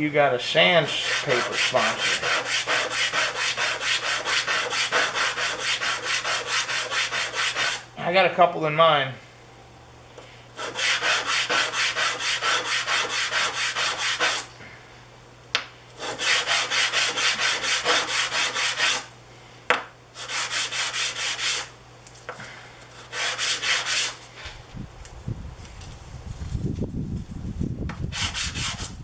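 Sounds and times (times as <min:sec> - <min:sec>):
wood scraping on sandpaper: 0:00.7 - 0:07.9, 0:10.6 - 0:14.5, 0:16.0 - 0:19.1, 0:20.2 - 0:21.7, 0:22.9 - 0:24.5, 0:28.1 - 0:29.0.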